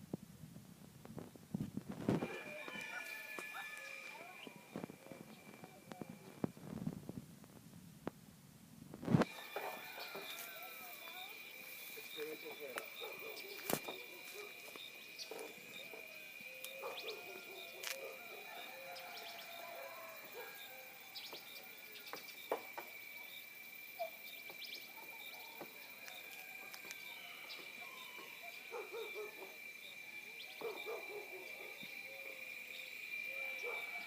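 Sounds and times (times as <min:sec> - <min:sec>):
low hooting calls: 0:02.2 - 0:06.5
birds chirping: 0:02.2 - 0:06.6, 0:09.3 - 0:22.6.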